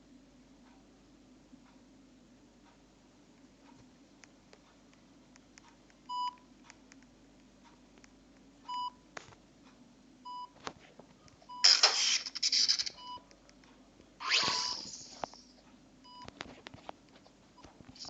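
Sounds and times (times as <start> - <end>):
hissing noise rushes: 11.6 - 13.0
electronic beeper beeping: 14.2 - 15.1.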